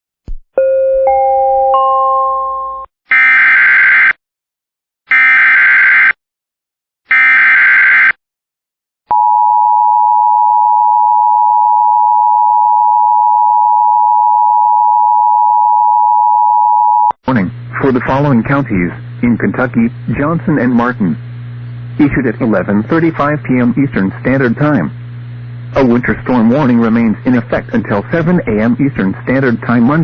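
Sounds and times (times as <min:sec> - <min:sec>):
harsh buzzing data tones: 0:17.2 - 0:30.0.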